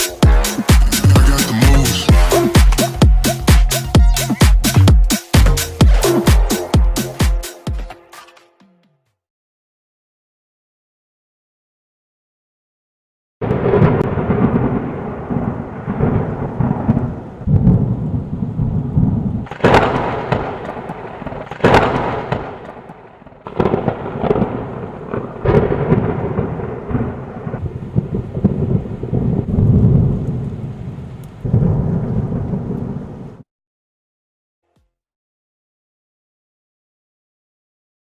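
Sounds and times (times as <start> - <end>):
thunder rumbling: 0.0 - 6.8, 13.4 - 33.4
sharp thunder cracks: 13.4 - 30.7, 31.4 - 33.1.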